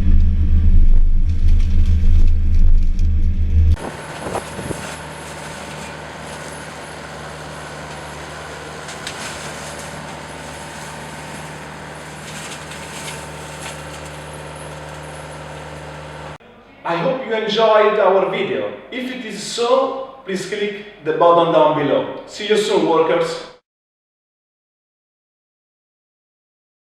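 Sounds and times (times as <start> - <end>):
deep engine sound: 0.0 - 16.4
excavator engine and hydraulics: 0.0 - 16.6.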